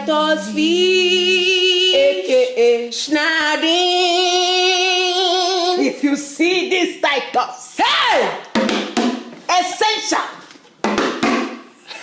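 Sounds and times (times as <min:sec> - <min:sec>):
woman singing with vibrato: 0:00.0 - 0:08.4.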